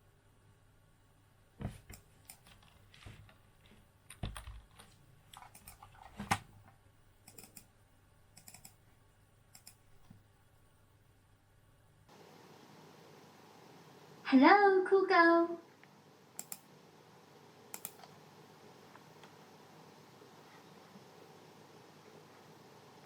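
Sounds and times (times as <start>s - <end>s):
computer keyboard and mouse clicks: 4.1s - 6.4s, 7.2s - 7.7s, 8.4s - 8.8s, 9.5s - 9.8s, 16.4s - 16.7s, 17.7s - 18.2s.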